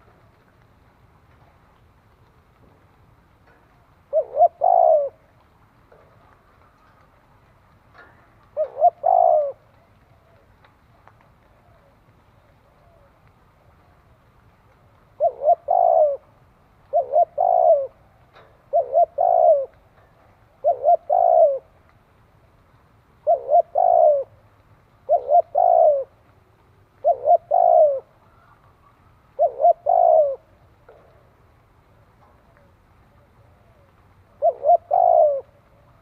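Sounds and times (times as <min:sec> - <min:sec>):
dove cooing: 0:03.6 - 0:07.0, 0:08.0 - 0:14.2, 0:15.1 - 0:21.8, 0:23.2 - 0:24.4, 0:25.0 - 0:31.3, 0:32.2 - 0:36.0.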